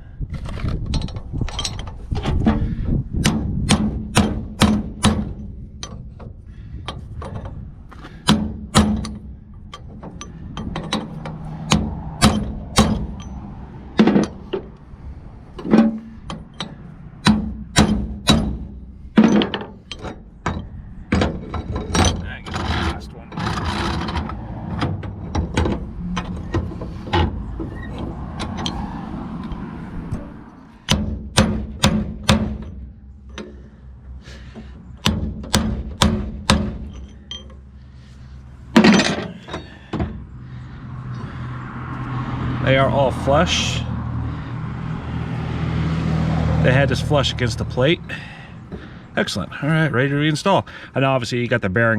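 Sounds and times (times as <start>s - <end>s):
metal rattling clatter: 0.3s - 29.6s, 34.4s - 40.3s
hammer striking metal punch: 3.2s - 5.5s, 8.2s - 9.2s, 10.9s - 13.2s, 16.6s - 22.2s, 30.9s - 32.8s, 35.0s - 36.9s.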